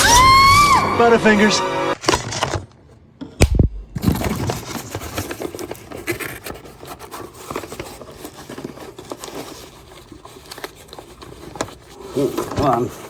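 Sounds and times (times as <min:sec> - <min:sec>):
packaging rubbing and scraping: 0:03.9 - 0:13.0.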